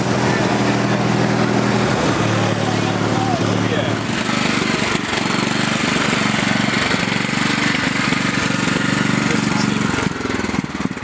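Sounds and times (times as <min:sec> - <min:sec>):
lawn mower engine idling: 0:00.0 - 0:11.0.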